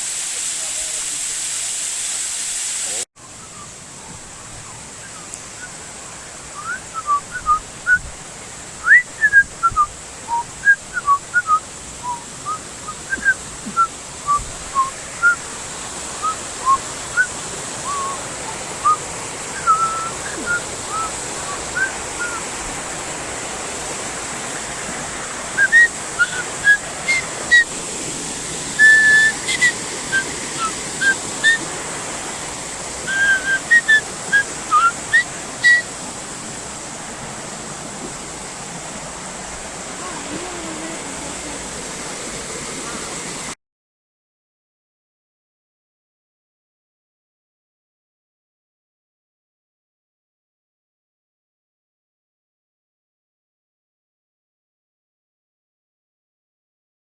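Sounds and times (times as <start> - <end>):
steady hiss: 0.0 - 43.6
bird whistling chirps: 6.6 - 8.1, 8.8 - 15.4, 16.2 - 18.2, 19.6 - 22.4, 25.6 - 27.7, 28.8 - 31.7, 33.1 - 35.9.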